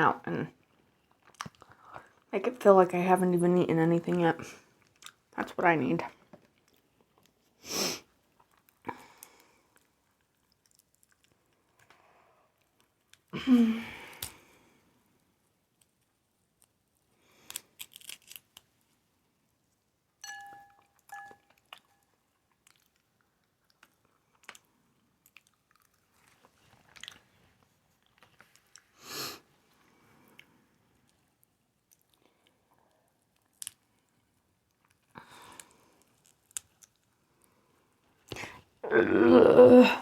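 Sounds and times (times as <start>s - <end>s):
chewing and crunching: 0.9s - 2.2s, 4.6s - 5.3s, 8.2s - 13.3s, 15.8s - 18.8s, 20.8s - 29.0s, 30.2s - 38.6s
clicks and cracks of food: 1.1s - 2.1s, 8.4s - 13.3s, 14.0s - 14.4s, 15.8s - 18.8s, 21.5s - 27.4s, 30.3s - 37.5s.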